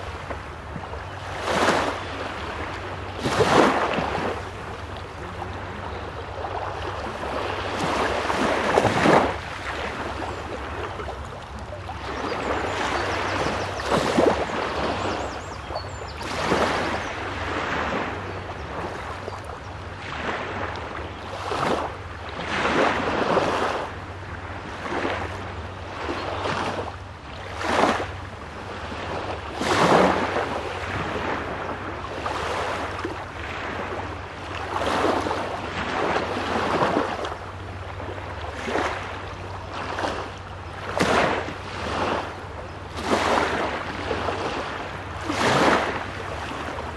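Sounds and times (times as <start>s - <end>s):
waves washing onto shore: 0.0s - 46.9s
steady low rumble: 3.8s - 12.5s.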